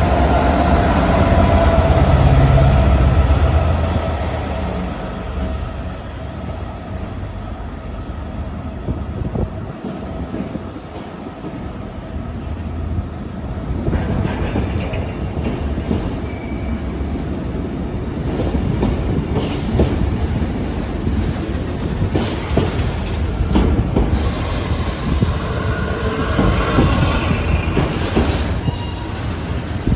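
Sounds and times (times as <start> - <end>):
diesel locomotive engine working: 0.0 - 29.9
wheels clattering over rail joints: 20.6 - 29.9
wheel squeal: 25.3 - 29.6.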